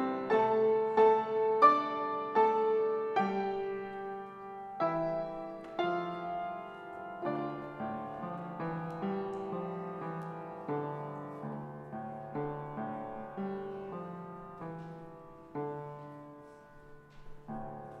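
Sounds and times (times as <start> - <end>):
slow solo piano chords: 0.0 - 18.0.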